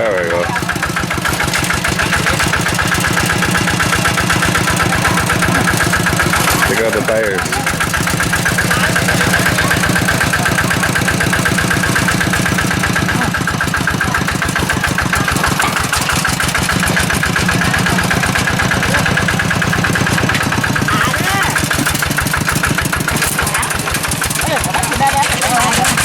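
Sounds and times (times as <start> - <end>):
engine running steadily: 0.0 - 26.0.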